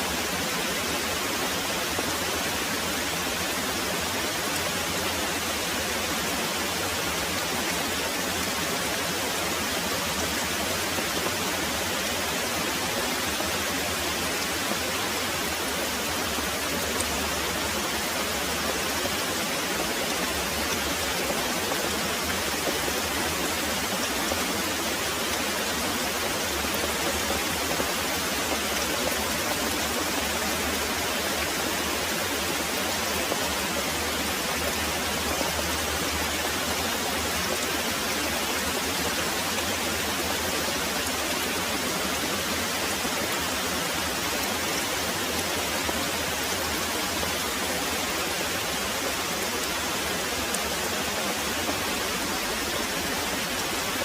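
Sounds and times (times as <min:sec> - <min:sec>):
heavy rain pouring: 0:00.0 - 0:54.0.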